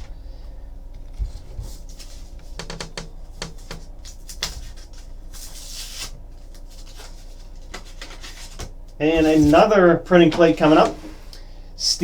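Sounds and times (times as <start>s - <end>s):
cards sliding rustle: 1.2s - 2.4s, 3.4s - 9.7s
cards clicking and tapping: 2.5s - 5.1s.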